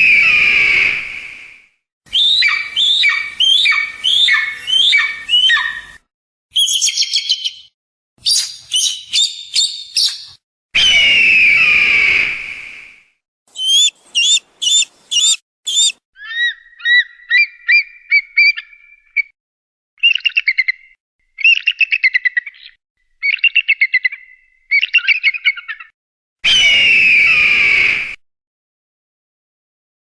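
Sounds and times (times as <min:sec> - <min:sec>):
eagle calls: 0:02.2 - 0:05.9, 0:13.5 - 0:18.8
chattering trills: 0:13.6 - 0:15.9.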